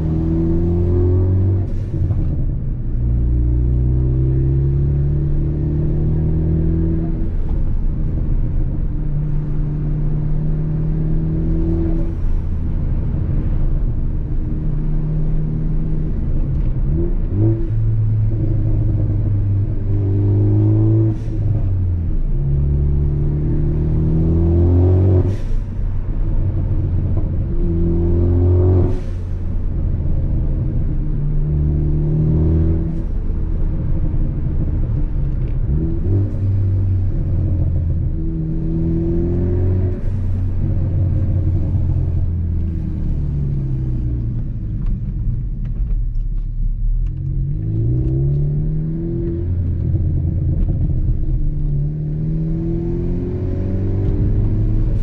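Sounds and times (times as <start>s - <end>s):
car engine revving through gears: 0.0s - 2.4s, 3.0s - 45.8s, 47.0s - 55.0s
exhaust pops and crackles: 44.2s - 48.4s, 49.6s - 51.8s.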